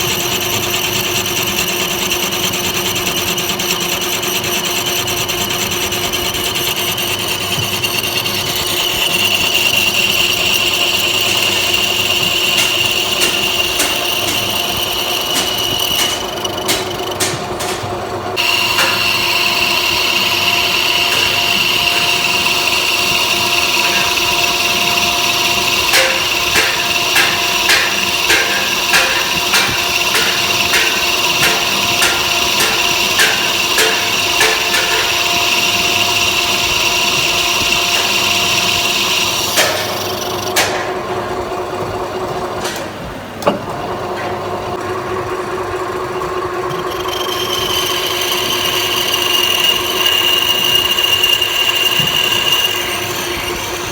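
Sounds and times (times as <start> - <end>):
metal lathe whining: 0.0 - 42.2, 45.5 - 53.9
sharp knocks: 12.6 - 18.0, 18.8 - 19.2, 25.9 - 35.4.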